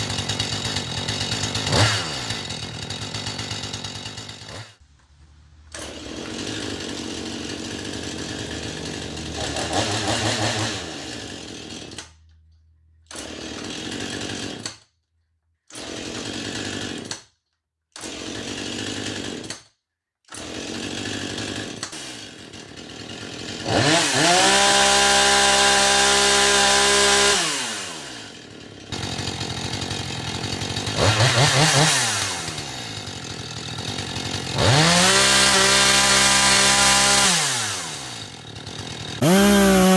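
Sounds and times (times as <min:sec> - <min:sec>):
chainsaw revving: 0:00.0 - 0:04.8, 0:05.6 - 0:12.3, 0:13.1 - 0:14.7, 0:15.7 - 0:17.2, 0:18.0 - 0:19.6, 0:20.3 - 0:39.9.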